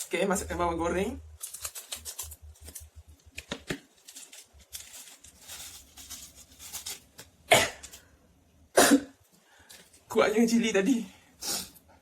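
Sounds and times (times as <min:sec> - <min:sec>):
fried shallots crackling and rustling: 0:01.3 - 0:08.0.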